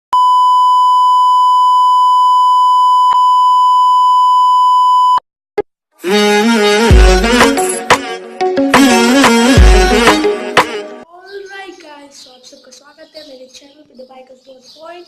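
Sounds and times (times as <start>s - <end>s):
high electronic beep tone: 0.2s - 5.2s
music: 6.0s - 11.0s.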